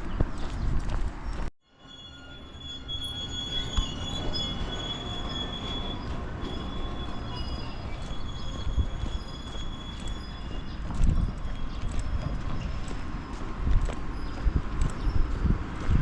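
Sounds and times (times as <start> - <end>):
wheels squealing on rails: 1.6 - 16.0
train rumble: 1.9 - 16.0.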